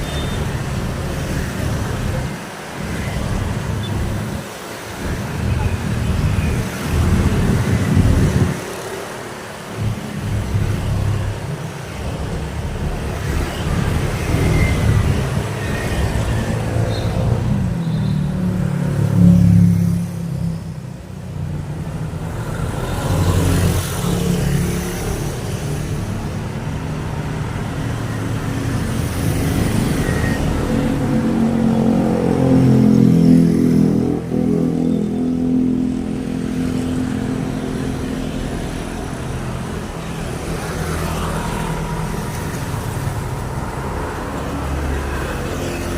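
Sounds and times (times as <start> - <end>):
cars and motorbikes passing: 0.0 - 45.9.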